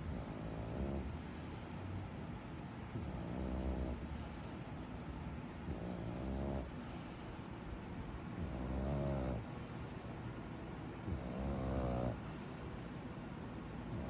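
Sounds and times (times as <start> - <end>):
person snoring: 11.1 - 12.4.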